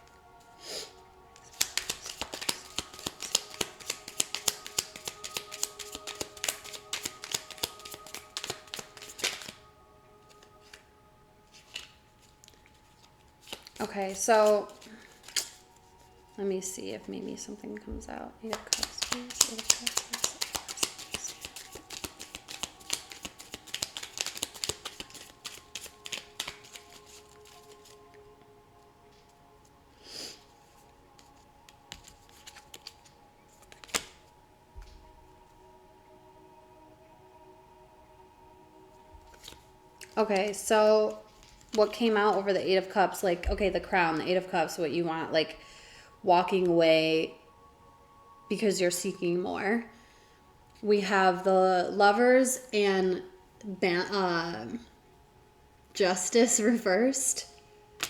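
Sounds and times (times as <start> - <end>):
soft background music: 0.0 - 58.0
cards being shuffled: 1.4 - 9.6, 10.3 - 10.8, 11.5 - 16.3, 18.5 - 28.0, 30.6 - 35.0, 39.2 - 40.6, 41.3 - 42.4.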